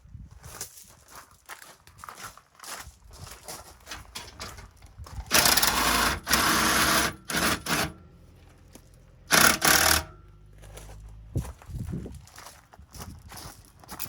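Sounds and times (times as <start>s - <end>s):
small electric motor running: 5.3s - 8.0s, 9.3s - 10.2s.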